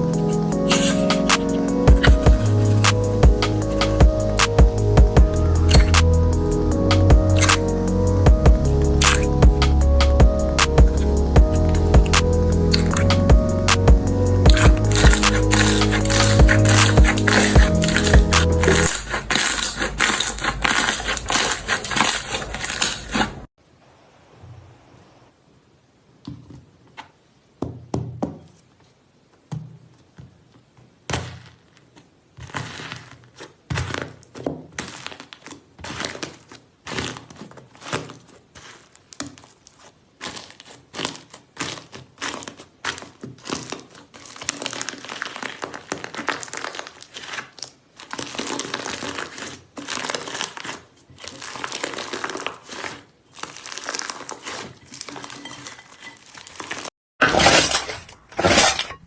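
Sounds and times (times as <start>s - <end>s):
slime crackling and popping: 40.2s - 55.4s.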